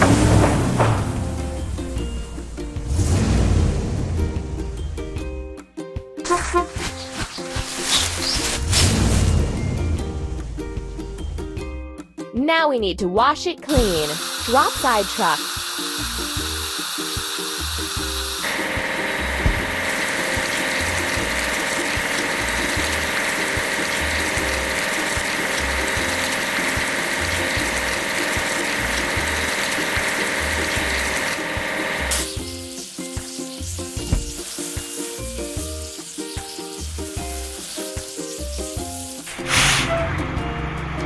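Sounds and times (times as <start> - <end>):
music with bass beat: 0.0 - 8.6, 9.3 - 12.1, 17.6 - 21.6, 32.3 - 39.3
spraying water hiss: 13.7 - 39.9.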